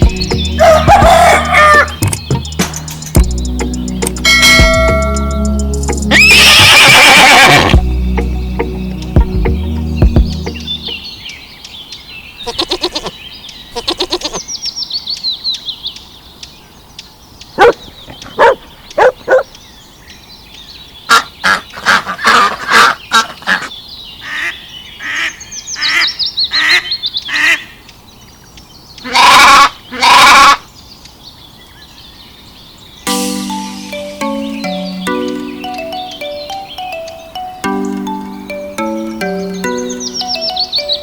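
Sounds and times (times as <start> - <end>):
animal and bird calls: 0.0 - 4.2, 6.0 - 33.0, 34.1 - 41.0
piano-like music: 0.0 - 6.4, 7.7 - 11.1, 33.1 - 41.0
falling chirp series: 0.0 - 11.2, 33.1 - 41.0.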